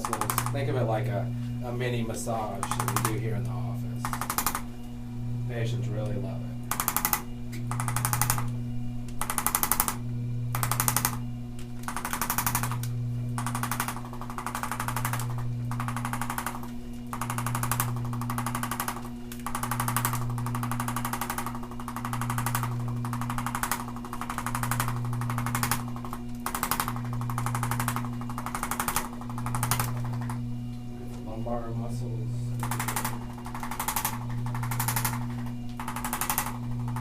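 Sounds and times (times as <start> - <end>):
massage gun hammering on muscles: 0.0 - 0.8, 4.0 - 4.7, 6.7 - 8.5, 9.2 - 11.2, 11.8 - 30.4, 32.6 - 37.0
low motor hum: 0.0 - 37.0.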